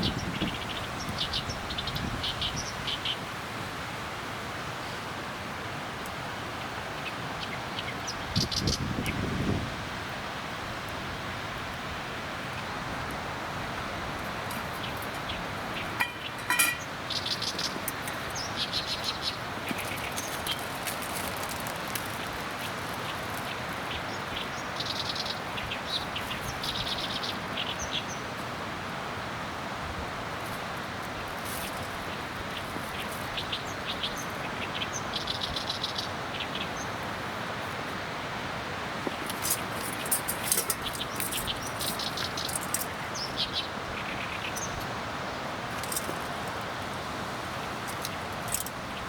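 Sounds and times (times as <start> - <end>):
bird chirps and trills: 14.7 - 22.3
bird chirps: 14.8 - 17.8
campfire crackling and popping: 19.8 - 23.8.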